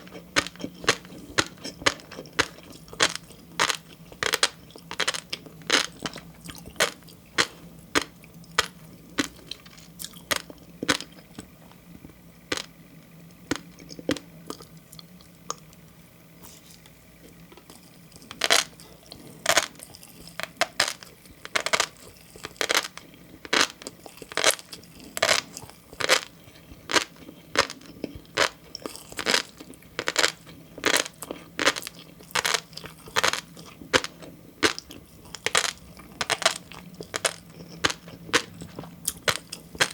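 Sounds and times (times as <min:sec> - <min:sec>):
fish roe popping while chewed: 0:19.5 - 0:39.9.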